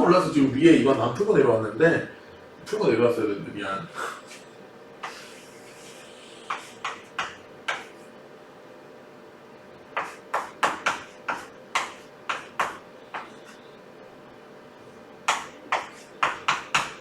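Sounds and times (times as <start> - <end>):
faint steady hum: 0.0 - 17.0
writing taps on hard surface: 6.5 - 7.9, 10.0 - 13.4.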